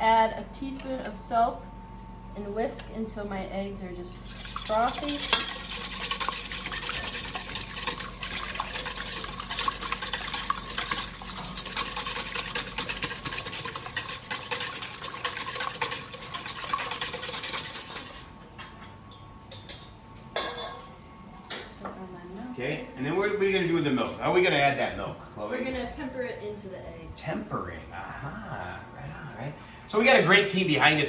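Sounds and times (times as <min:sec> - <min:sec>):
whisk beating eggs in bowl: 0:04.1 - 0:18.3.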